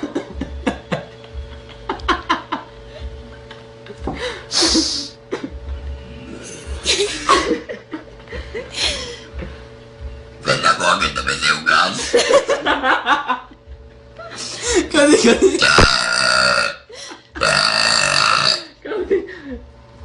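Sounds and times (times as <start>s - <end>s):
people laughing and snickering: 0.0s - 10.0s, 12.0s - 15.7s, 18.8s - 19.7s.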